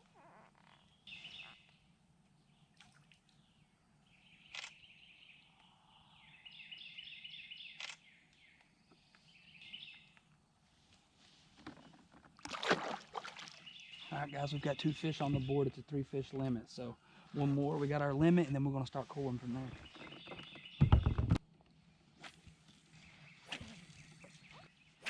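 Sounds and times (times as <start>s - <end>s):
songbirds trilling: 0.0s - 2.8s, 3.4s - 10.3s, 13.5s - 21.4s, 22.9s - 25.0s
knocks and handling noise: 11.5s - 12.5s, 19.8s - 21.4s.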